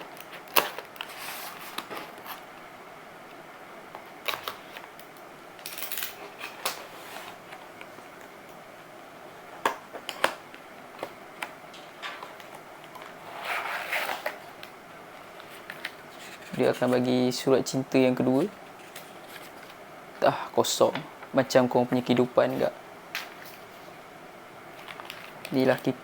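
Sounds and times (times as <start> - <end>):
packaging crinkling: 24.7 - 26.0.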